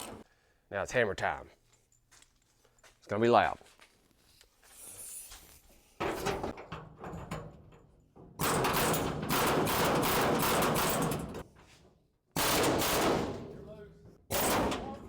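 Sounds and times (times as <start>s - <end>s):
air hammer chiselling sheet metal: 8.4s - 11.3s, 12.4s - 13.4s.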